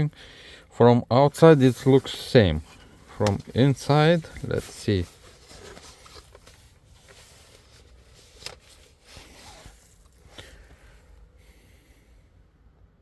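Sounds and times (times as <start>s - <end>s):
plastic clicks and rubbing: 2.8s - 3.6s.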